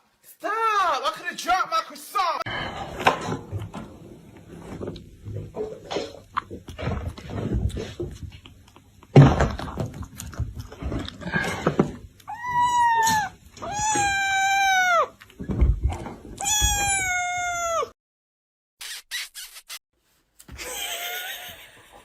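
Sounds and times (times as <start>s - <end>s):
cat meowing: 12.3s - 15.2s, 16.4s - 18.0s.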